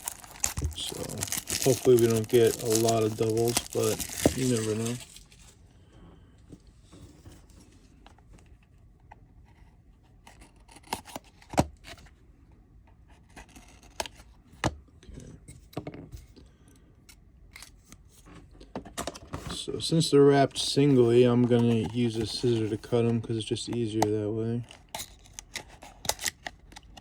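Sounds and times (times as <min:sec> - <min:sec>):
cardboard and wrappers rustling: 0:00.0 - 0:05.6, 0:20.6 - 0:23.2.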